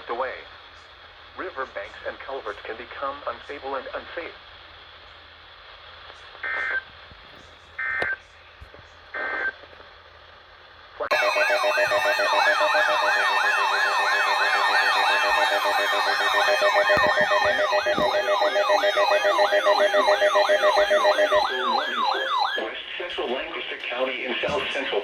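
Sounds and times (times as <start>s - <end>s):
electronic yelp siren: 11.1s - 22.8s.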